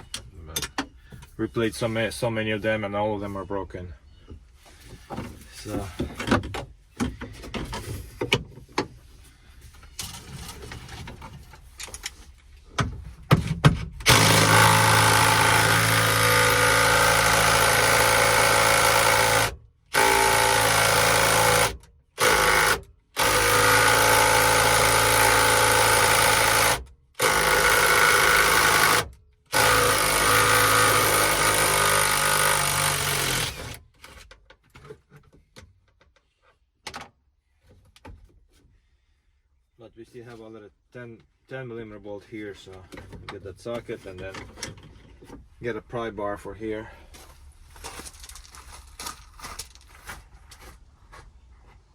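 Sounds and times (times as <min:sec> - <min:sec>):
handheld power tool running: 0:14.1 - 0:33.8.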